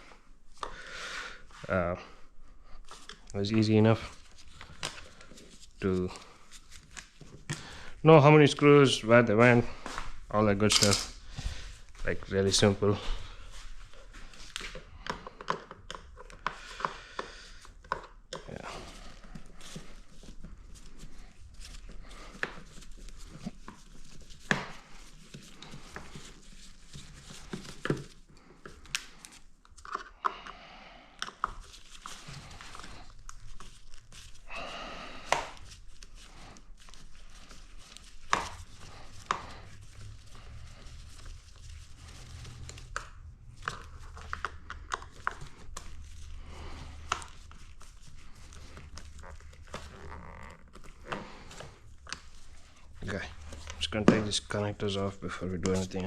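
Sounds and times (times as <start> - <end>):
rustling and crinkling: 2.6 - 30.2, 31.2 - 56.0
tools clicking and knocking: 10.7 - 11.1.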